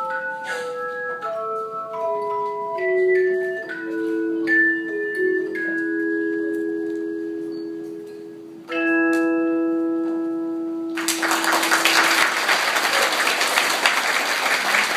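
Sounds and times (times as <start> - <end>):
audience applause: 11.0 - 14.9.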